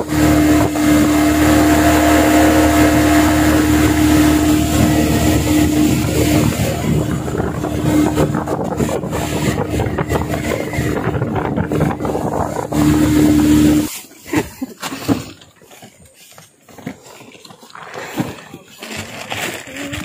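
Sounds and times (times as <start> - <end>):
outboard motor running: 0.0 - 20.0
water splashing: 0.0 - 20.0.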